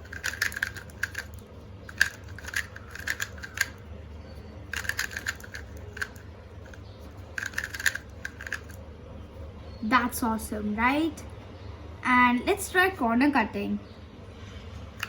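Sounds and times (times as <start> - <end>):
puzzle cube clicking as turned: 0.0 - 3.8, 4.7 - 6.8, 7.4 - 8.8.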